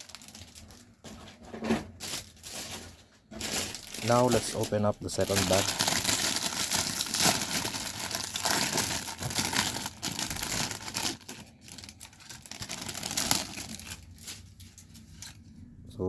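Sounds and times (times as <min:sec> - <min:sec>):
plastic bag crinkling: 0:00.0 - 0:01.2, 0:01.9 - 0:15.4.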